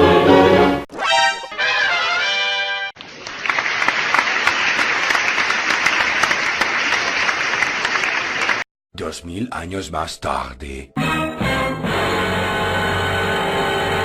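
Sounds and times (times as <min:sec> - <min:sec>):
crowd applauding: 0:03.1 - 0:08.6.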